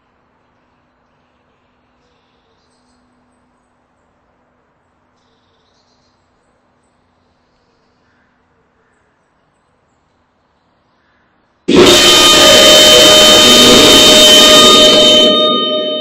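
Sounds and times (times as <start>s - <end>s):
steady low hum: 11.7s - 16.0s.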